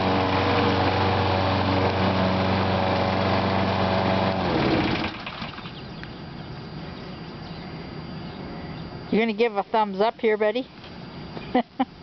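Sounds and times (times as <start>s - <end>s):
lawn mower engine winding down: 0.0s - 6.0s.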